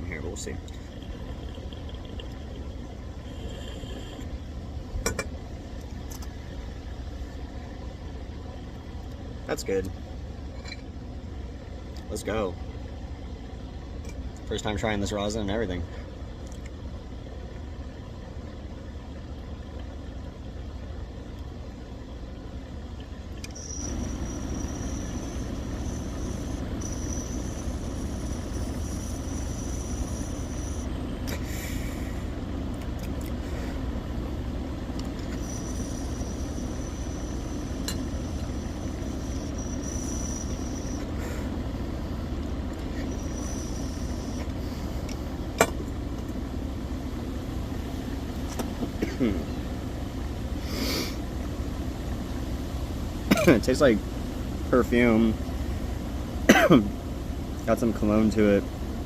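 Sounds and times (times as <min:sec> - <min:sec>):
water pipe bubbling: 0:00.0 - 0:05.0, 0:22.9 - 0:31.5, 0:34.8 - 0:41.2
high whistle of air: 0:23.6 - 0:32.2, 0:35.3 - 0:41.5, 0:43.0 - 0:44.5.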